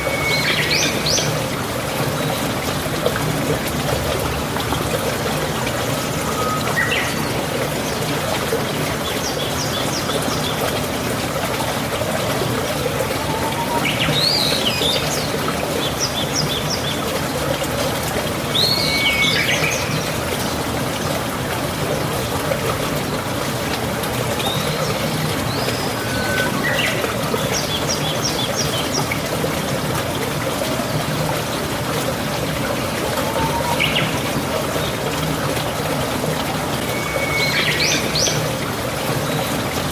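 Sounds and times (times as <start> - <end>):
running water rushing: 0.0 - 39.9
birds whistling chirps: 13.1 - 15.3, 25.5 - 28.7, 33.2 - 34.2.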